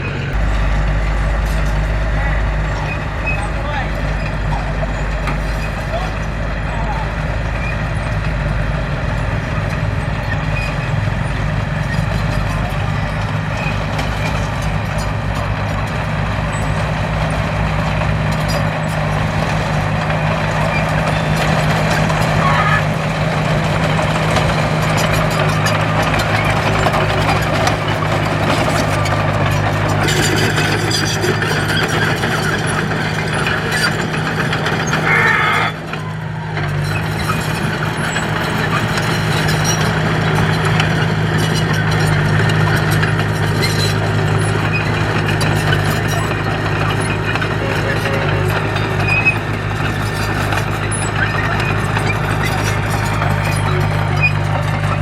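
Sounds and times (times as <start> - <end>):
diesel engine running: 0.0 - 55.0.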